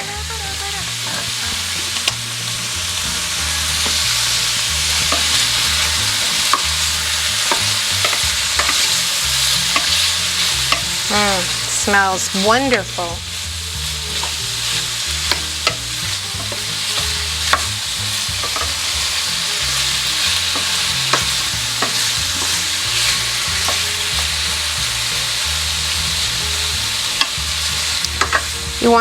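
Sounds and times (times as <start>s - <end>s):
food sizzling in a pan: 0.0s - 29.0s
utensil clicking against pan: 5.0s - 11.3s, 14.1s - 24.8s, 27.1s - 28.6s.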